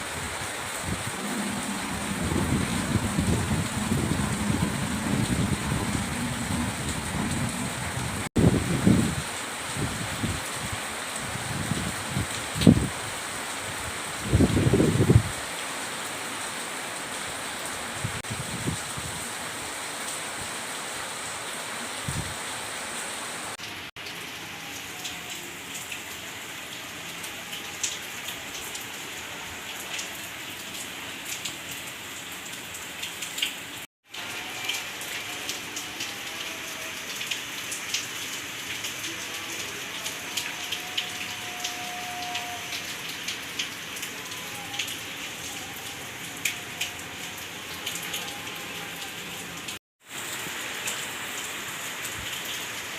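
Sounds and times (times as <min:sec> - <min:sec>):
rain downpour hiss: 0:00.0 - 0:52.9
raindrops ticking on a surface: 0:01.3 - 0:13.6, 0:23.5 - 0:52.9.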